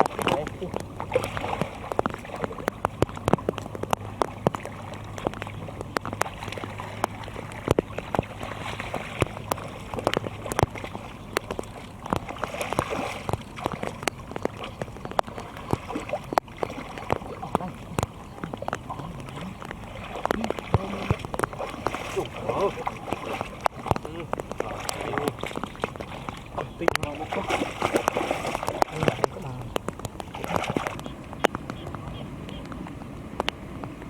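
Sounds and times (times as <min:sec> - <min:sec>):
hands splashing in muddy water: 0:00.0 - 0:32.7.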